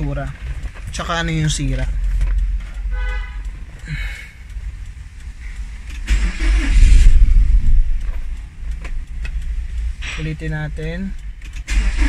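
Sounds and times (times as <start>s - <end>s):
car engine cranking without catching: 0.0s - 12.0s
rough engine burst: 6.0s - 8.0s, 11.6s - 12.0s.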